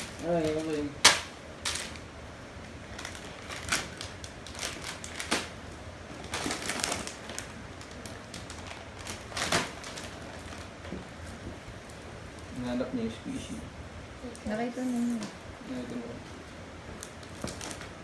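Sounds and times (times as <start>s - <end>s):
packaging crinkling and rustling: 0.0s - 12.4s, 17.0s - 18.0s.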